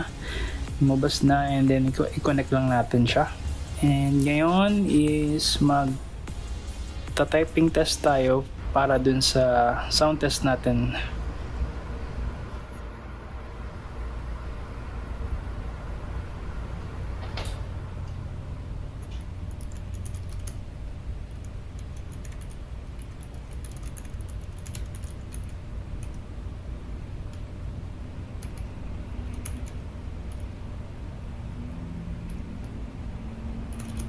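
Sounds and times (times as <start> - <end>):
steady low hum: 0.0 - 34.0
mechanical keyboard typing: 19.5 - 20.6, 21.4 - 26.2, 29.3 - 30.5, 33.7 - 34.0.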